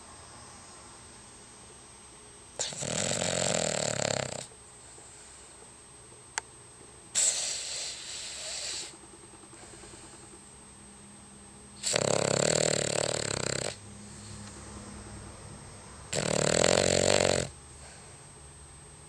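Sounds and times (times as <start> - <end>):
dog snoring: 2.6 - 5.5, 7.1 - 9.0, 11.8 - 14.6, 16.1 - 18.1.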